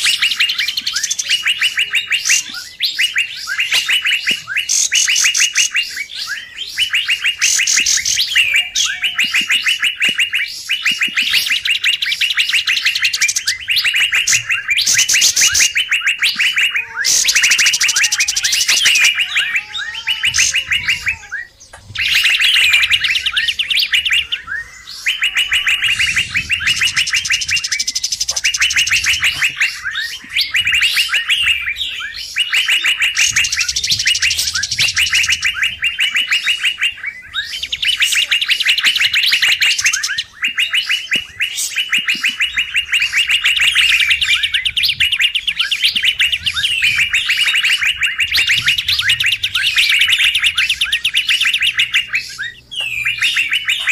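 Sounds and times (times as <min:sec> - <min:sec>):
bird chattering calls: 0:00.0 - 0:53.9.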